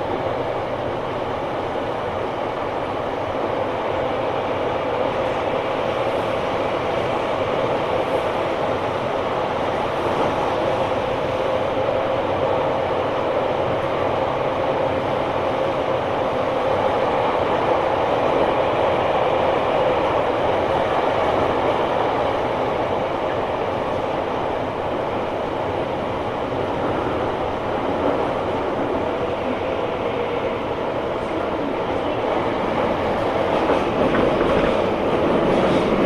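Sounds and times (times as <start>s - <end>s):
electric train rolling rumble: 0.0s - 36.0s.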